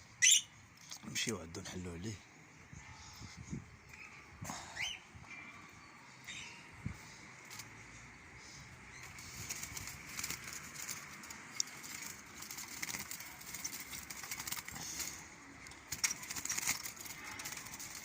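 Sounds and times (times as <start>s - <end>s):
bird wings fluttering: 9.0s - 18.0s
wire bird cage clicks and rustles: 9.0s - 18.0s.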